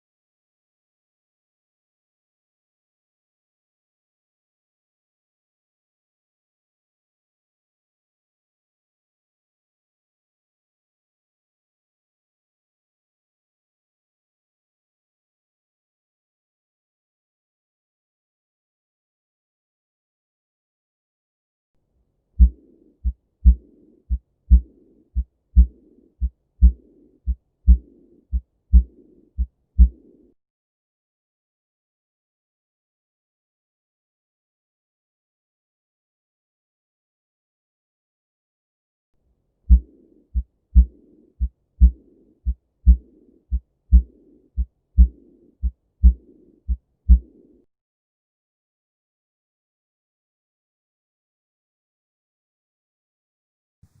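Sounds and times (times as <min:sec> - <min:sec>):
heart murmur: 0:22.4 - 0:24.7, 0:25.6 - 0:27.9, 0:28.7 - 0:30.0, 0:40.8 - 0:41.0, 0:41.8 - 0:43.0, 0:43.9 - 0:45.2, 0:46.0 - 0:46.2, 0:47.1 - 0:47.4
heartbeat through stethoscope: 0:22.4 - 0:30.2, 0:39.7 - 0:47.4.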